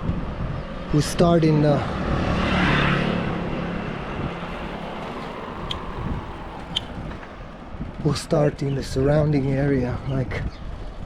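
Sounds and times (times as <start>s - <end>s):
vehicle passing by: 0.2s - 8.2s.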